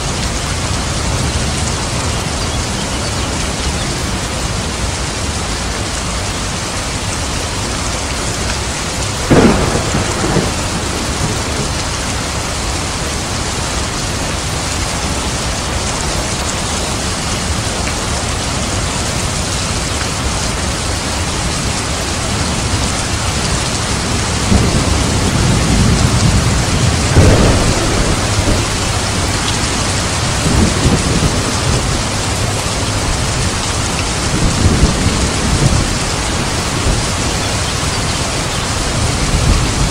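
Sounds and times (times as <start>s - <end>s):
heavy rain: 0.0s - 39.9s
thunder crack: 9.2s - 12.0s, 24.4s - 32.5s
rumbling thunder: 9.2s - 14.7s, 22.4s - 39.9s.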